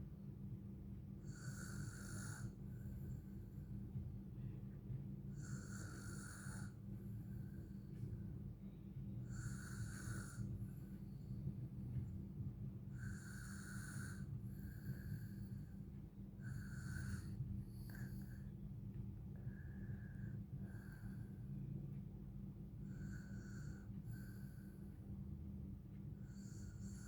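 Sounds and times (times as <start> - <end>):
small child snoring: 1.2 - 2.6, 5.4 - 6.8, 9.3 - 10.5, 13.0 - 15.6, 26.3 - 27.0.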